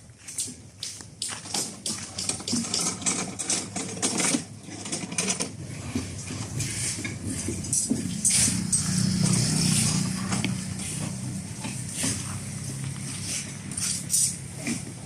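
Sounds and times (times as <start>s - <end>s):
construction clattering and knocking: 0.3s - 15.0s.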